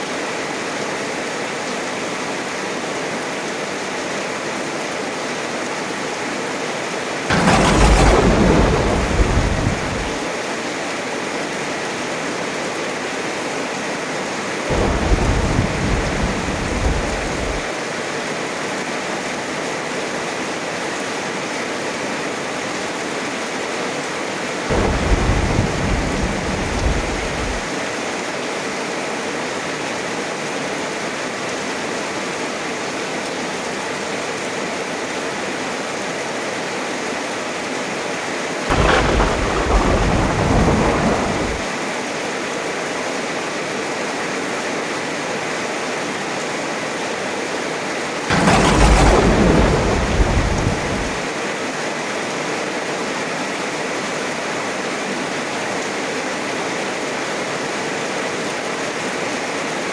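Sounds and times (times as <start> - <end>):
heavy rain: 7.0 - 12.6, 14.3 - 18.1, 24.4 - 28.3, 38.6 - 42.5, 48.0 - 51.8
thunder cracking and rumbling: 7.3 - 10.4, 14.7 - 17.7, 24.7 - 27.8, 38.7 - 41.8, 48.3 - 51.3.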